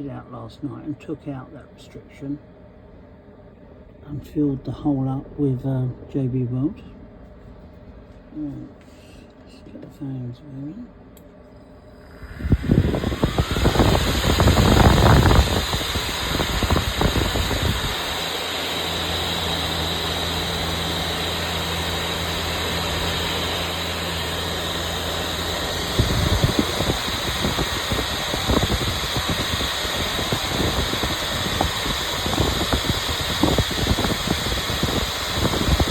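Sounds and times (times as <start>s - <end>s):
heater fans whining: 0.0s - 35.9s
airy rush: 12.0s - 34.2s.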